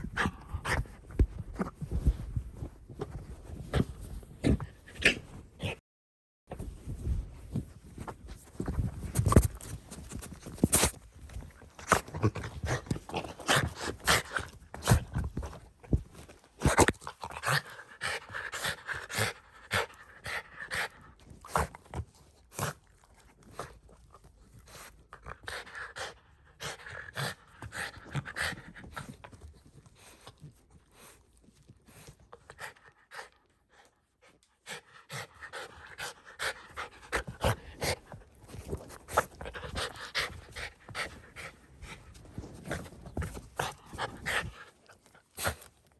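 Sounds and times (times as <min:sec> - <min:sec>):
dog panting: 0:16.7 - 0:45.9.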